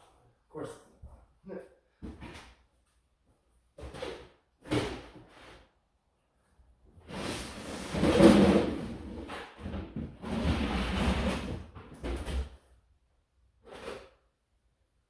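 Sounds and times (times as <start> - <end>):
objects sliding and shifting: 7.0 - 9.4.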